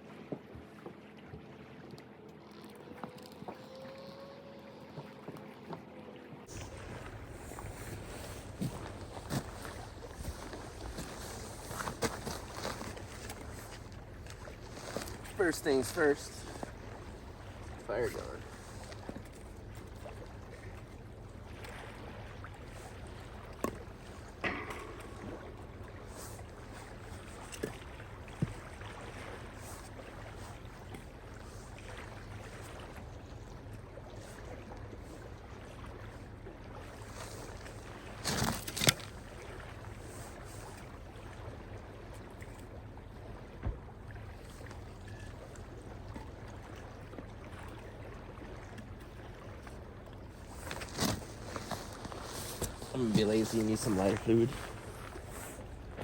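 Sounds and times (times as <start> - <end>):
rustle: 36.9 - 39.3, 50.4 - 55.7.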